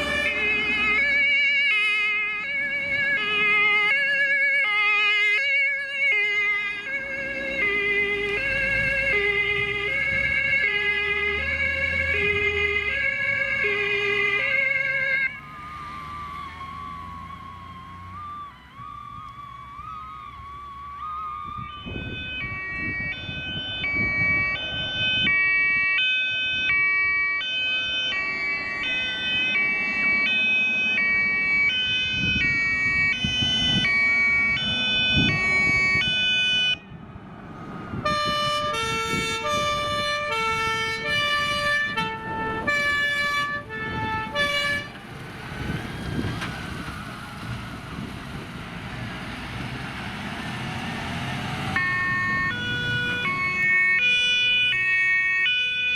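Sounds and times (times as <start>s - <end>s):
two-tone emergency horns: 0.0s - 16.9s, 21.0s - 37.0s, 38.0s - 45.0s, 51.7s - 55.9s
faint rising siren: 0.0s - 55.9s
vehicle and road noise: 0.0s - 55.9s.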